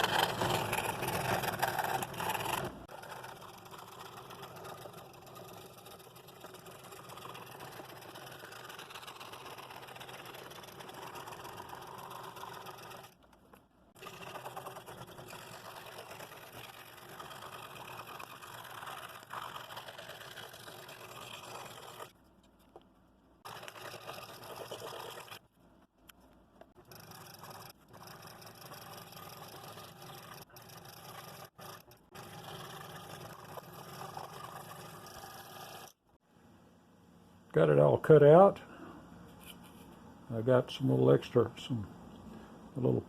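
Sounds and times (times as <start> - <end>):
scroll saw blade buzzing: 0.0 - 13.2, 14.0 - 22.1, 26.8 - 35.9.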